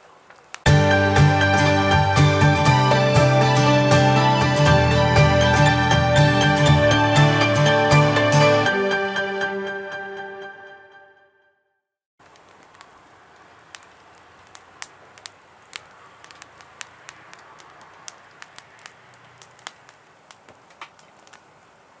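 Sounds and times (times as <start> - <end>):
wood fire crackling and popping: 0.0 - 6.6, 12.2 - 22.0
music track: 0.7 - 11.3.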